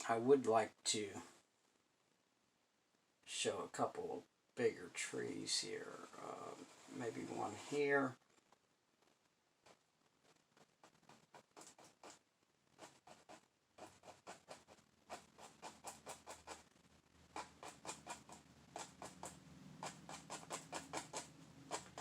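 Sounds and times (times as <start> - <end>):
faint low hum: 0.0 - 22.0
paintbrush dabbing on canvas: 17.4 - 22.0.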